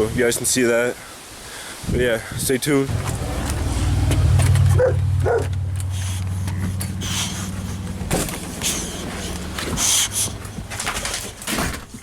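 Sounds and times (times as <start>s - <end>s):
low engine hum: 2.9s - 11.4s
dog barking: 4.8s - 5.5s.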